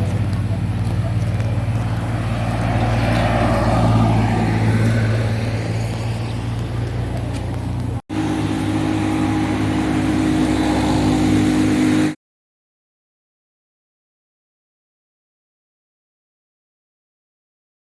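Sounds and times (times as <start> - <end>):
low engine hum: 0.0 - 12.2.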